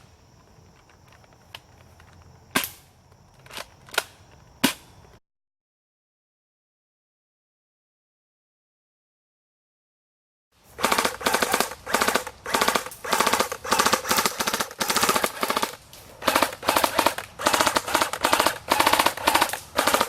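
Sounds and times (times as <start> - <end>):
airsoft gun full-auto bursts: 10.8 - 20.0.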